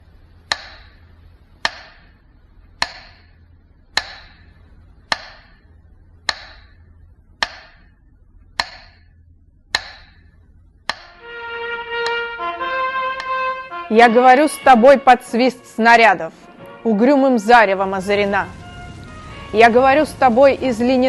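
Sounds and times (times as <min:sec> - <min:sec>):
low hum: 0:00.0 - 0:21.0
metronome ticking: 0:00.4 - 0:01.0, 0:01.6 - 0:02.1, 0:02.8 - 0:03.3, 0:03.9 - 0:04.5, 0:05.1 - 0:05.6, 0:06.2 - 0:06.8, 0:07.4 - 0:09.1, 0:09.7 - 0:11.3, 0:12.0 - 0:12.4.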